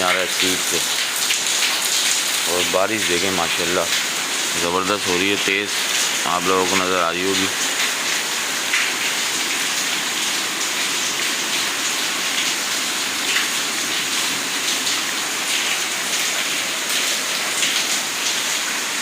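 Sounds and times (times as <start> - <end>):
heavy rain pouring: 0.0 - 19.0.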